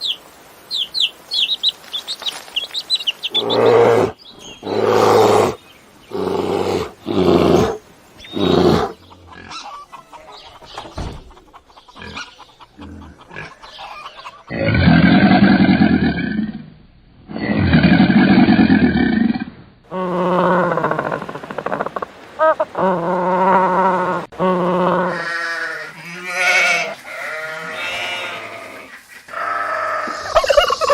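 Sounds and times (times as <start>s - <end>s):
small scattered sounds: 1.3s - 3.4s
animal calls: 1.4s - 16.1s, 19.9s - 30.9s.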